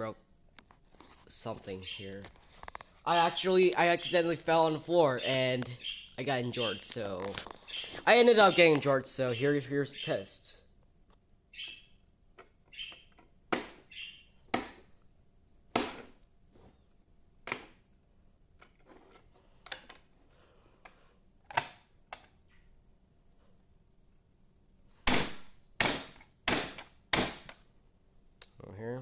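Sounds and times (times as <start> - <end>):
plastic clicks and knocks: 17.4 - 17.8.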